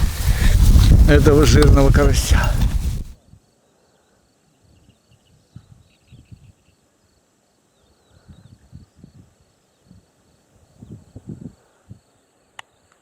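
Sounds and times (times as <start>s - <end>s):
soft low thumps: 0.0s - 3.2s
insects chirping: 0.0s - 13.0s.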